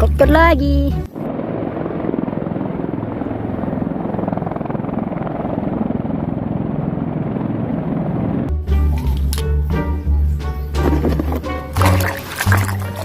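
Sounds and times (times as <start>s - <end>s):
helicopter rotor chopping: 1.1s - 8.5s.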